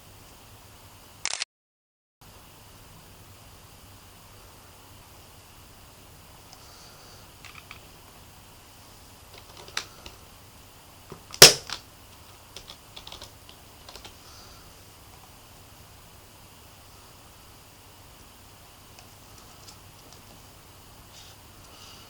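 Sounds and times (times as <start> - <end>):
keyboard key clicks: 12.6 - 13.3.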